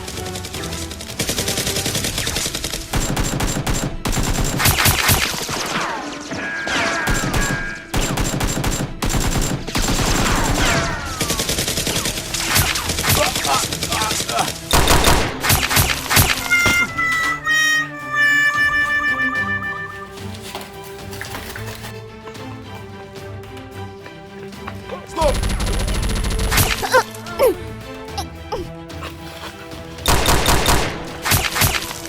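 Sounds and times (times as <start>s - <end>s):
rapid automatic gunfire effects: 0.0s - 5.9s, 7.1s - 16.1s, 25.3s - 26.7s, 30.1s - 31.8s.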